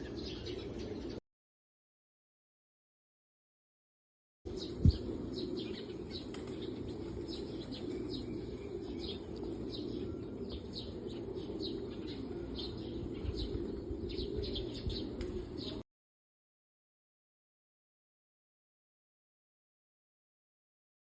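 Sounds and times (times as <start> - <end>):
birds chirping: 0.0 - 1.2, 4.5 - 15.8.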